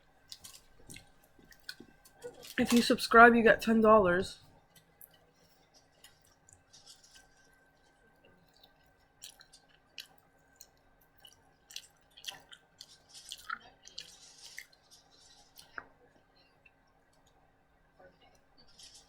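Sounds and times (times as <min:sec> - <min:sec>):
person chewing: 0:00.3 - 0:02.6, 0:08.5 - 0:15.8.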